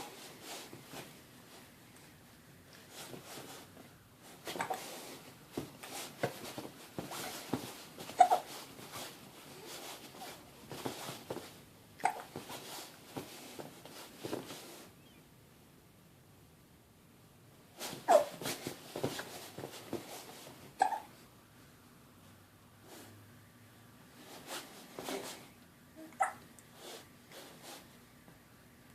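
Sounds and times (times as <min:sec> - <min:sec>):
baby hiccuping: 0:08.2 - 0:08.5, 0:12.0 - 0:12.3, 0:20.8 - 0:21.1, 0:26.0 - 0:26.4.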